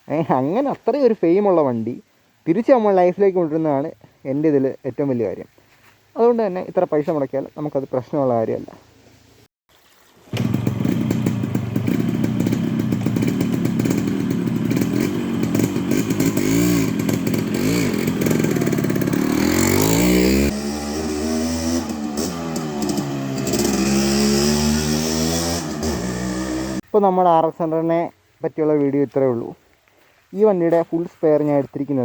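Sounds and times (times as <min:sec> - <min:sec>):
motorcycle engine revving: 0:10.3 - 0:26.8.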